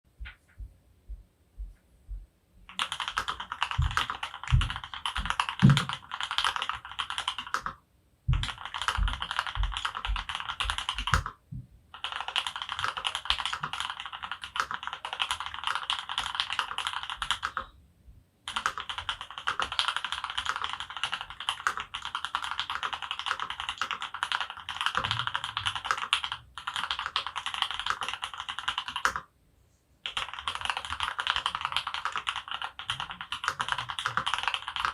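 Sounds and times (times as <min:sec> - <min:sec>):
fast mechanical keyboard typing: 0:02.7 - 0:11.4, 0:12.0 - 0:17.7, 0:18.5 - 0:29.3, 0:30.0 - 0:34.9.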